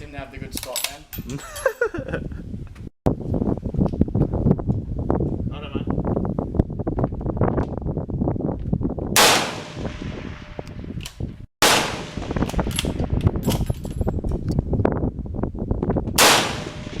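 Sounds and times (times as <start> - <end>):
wind buffeting microphone: 0.0 - 17.0
rifle shots: 9.2 - 10.9, 11.6 - 13.4, 16.2 - 17.0.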